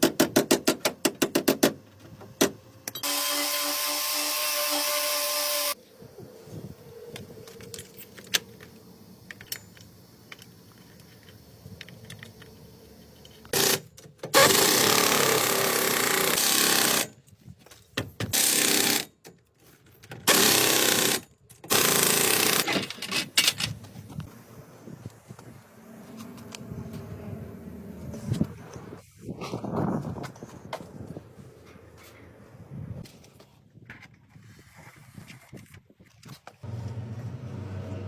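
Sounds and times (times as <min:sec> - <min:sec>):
power tool running: 0:03.0 - 0:05.8, 0:14.4 - 0:17.1.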